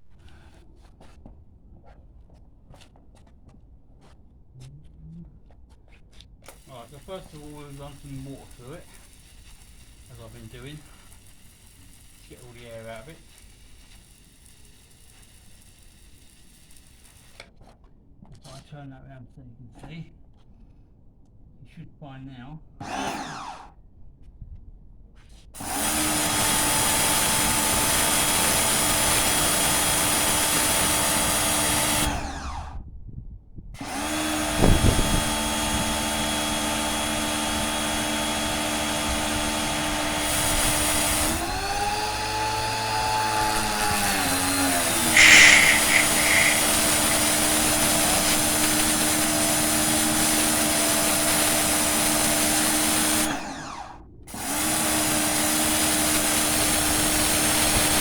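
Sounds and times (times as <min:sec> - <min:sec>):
pressure washer motor humming: 0:45.1 - 0:48.6.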